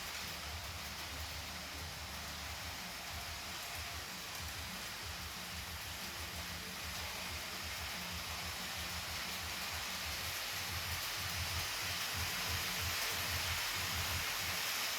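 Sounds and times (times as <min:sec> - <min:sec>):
model train wheels on rail: 0:00.0 - 0:14.9.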